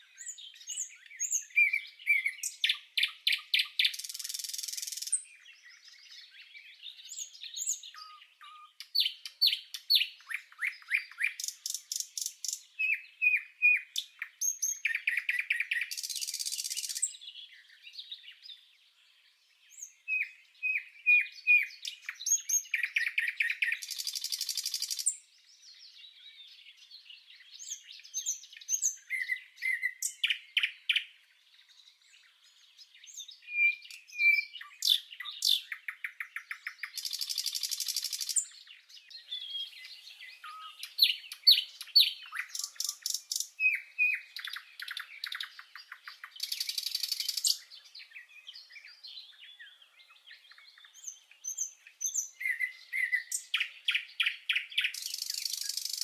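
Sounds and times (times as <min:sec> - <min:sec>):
small birds chirping and trilling: 0:00.0 - 0:56.0.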